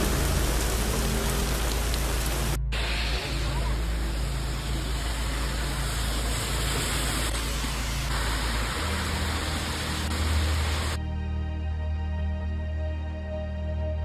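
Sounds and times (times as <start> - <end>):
heavy rain pouring: 0.0 - 11.0
low music drone: 0.0 - 14.0.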